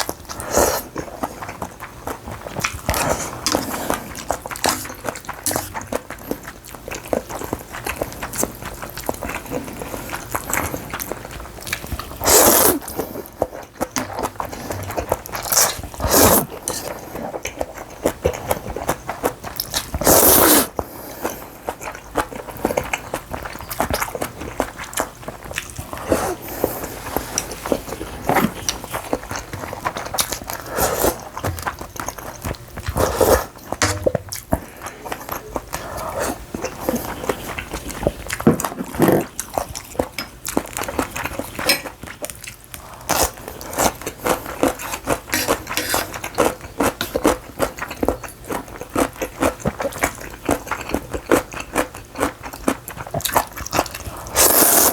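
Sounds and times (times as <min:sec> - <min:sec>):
chewing: 0:00.0 - 0:54.9
slurping: 0:11.8 - 0:17.4, 0:25.8 - 0:38.0.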